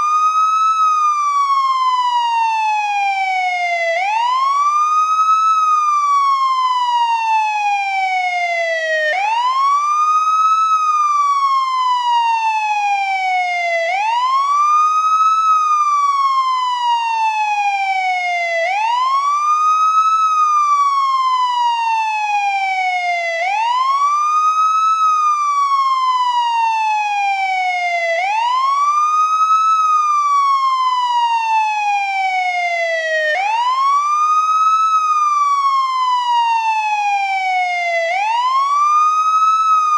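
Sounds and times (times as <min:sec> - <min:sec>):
police siren wailing: 0:00.0 - 0:39.9.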